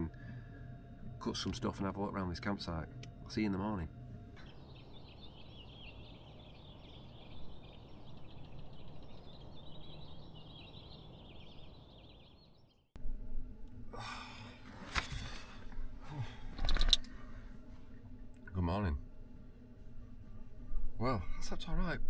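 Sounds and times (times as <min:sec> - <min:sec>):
birds chirping and singing: 0:03.3 - 0:12.9.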